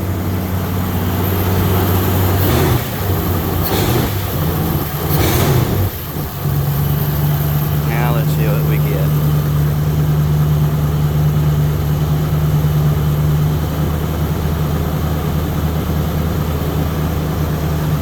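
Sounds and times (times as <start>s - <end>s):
car engine idling: 0.0s - 12.8s.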